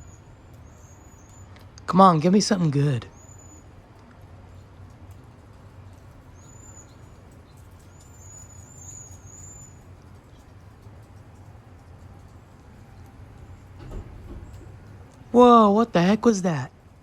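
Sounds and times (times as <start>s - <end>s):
wind gusting through foliage: 0.0s - 17.0s.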